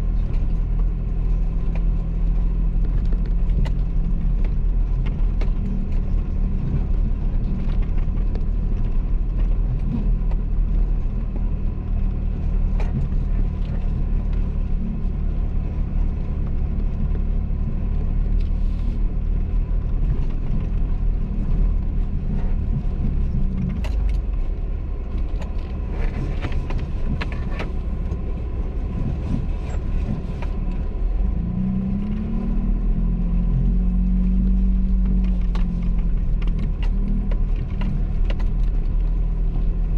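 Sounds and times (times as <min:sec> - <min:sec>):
off-road vehicle engine: 0:00.0 - 0:39.9.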